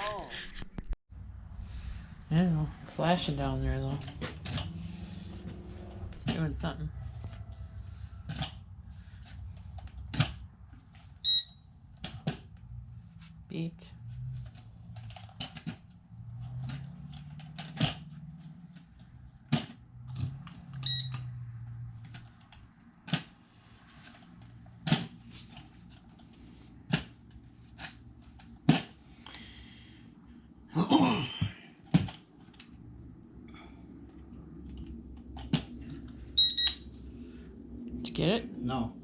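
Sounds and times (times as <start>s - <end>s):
low wavering hum: 1.1s - 11.7s, 32.3s - 39.0s.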